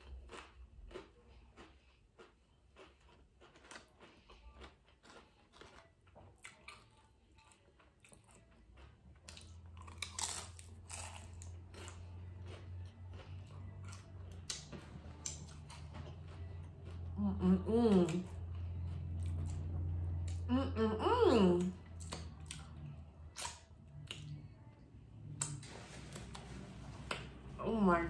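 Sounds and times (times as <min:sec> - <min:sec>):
chewing crunchy chips: 0:00.0 - 0:17.2, 0:18.0 - 0:20.4, 0:21.6 - 0:24.7
steady low hum: 0:08.8 - 0:28.0.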